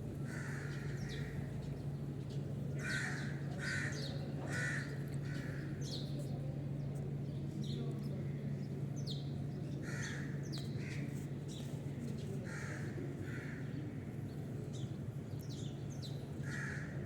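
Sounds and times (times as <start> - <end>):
crow cawing: 16.5 - 16.9.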